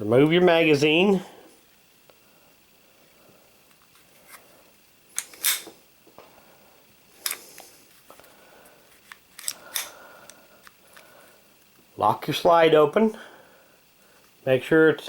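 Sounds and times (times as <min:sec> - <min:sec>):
pistol metallic clicks: 0:05.2 - 0:05.7, 0:09.4 - 0:10.4
magazine sliding scrapes: 0:05.2 - 0:05.8, 0:07.2 - 0:08.1, 0:08.9 - 0:10.0.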